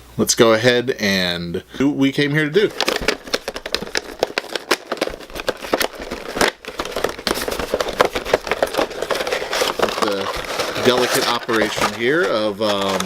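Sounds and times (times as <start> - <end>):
cardboard and plastic crinkling: 2.5 - 13.0
sharp clicks and rustles: 2.6 - 13.0.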